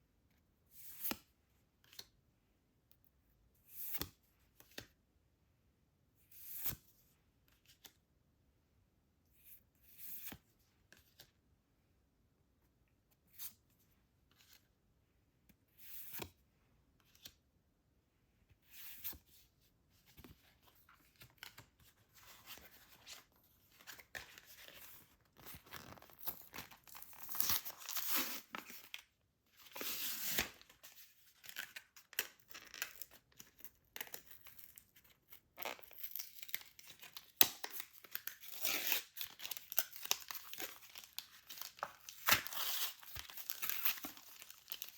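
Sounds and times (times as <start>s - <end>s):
plastic packaging tearing and crinkling: 35.6s - 44.9s.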